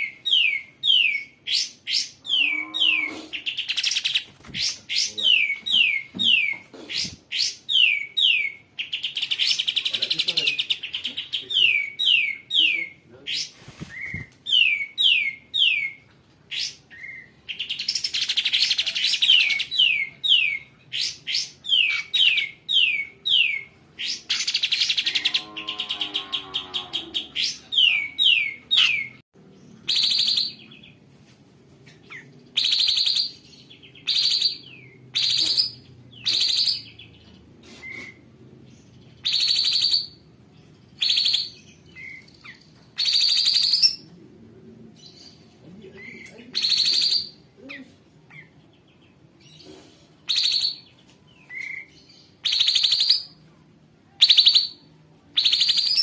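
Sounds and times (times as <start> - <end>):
bird harsh rasps: 37.6 - 38.3.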